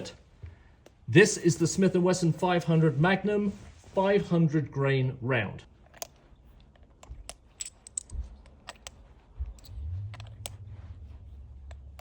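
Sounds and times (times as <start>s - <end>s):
revolver handling clicks and knocks: 5.8s - 10.6s
low rumble: 9.2s - 12.0s.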